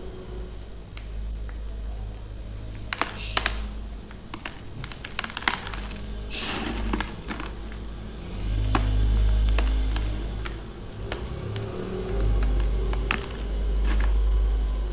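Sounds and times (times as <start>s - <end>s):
baking soda pieces crunching: 2.2s - 14.9s.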